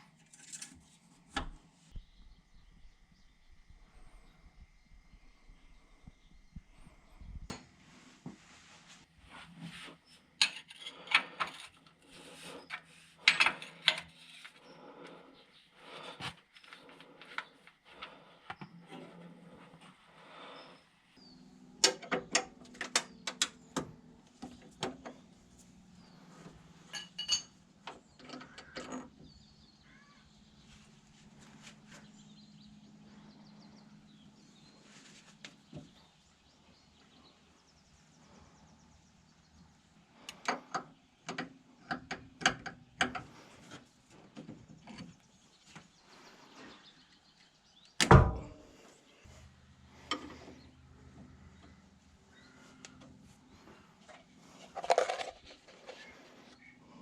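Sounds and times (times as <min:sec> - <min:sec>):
metal tools clattering: 0:00.1 - 0:00.8, 0:26.9 - 0:27.6
low hum: 0:01.3 - 0:08.1.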